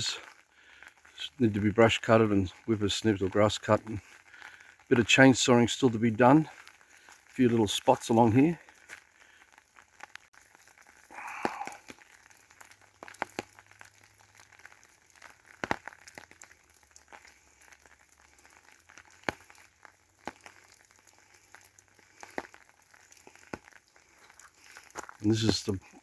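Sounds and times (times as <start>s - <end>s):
raindrops tapping on umbrella: 0.0s - 26.0s.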